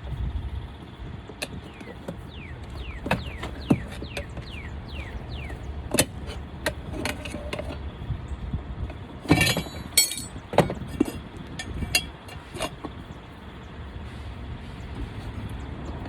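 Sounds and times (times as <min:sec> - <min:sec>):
steady low rumble: 0:00.0 - 0:16.0
metallic tool clinks and knocks: 0:09.3 - 0:12.7.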